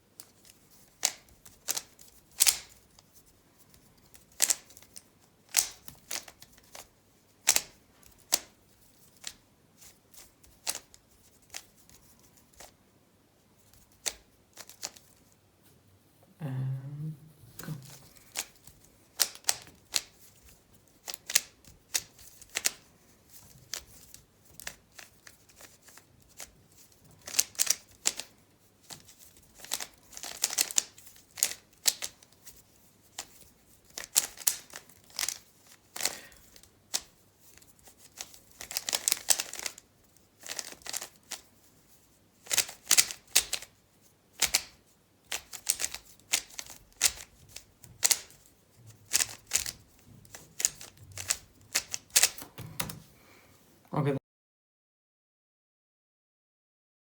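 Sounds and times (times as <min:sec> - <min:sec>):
speed cube plastic clicking: 0:00.2 - 0:03.1, 0:03.7 - 0:09.4, 0:10.2 - 0:12.7, 0:13.8 - 0:15.2, 0:17.9 - 0:32.4, 0:33.1 - 0:39.8, 0:40.4 - 0:41.5, 0:42.4 - 0:43.7, 0:44.4 - 0:53.1.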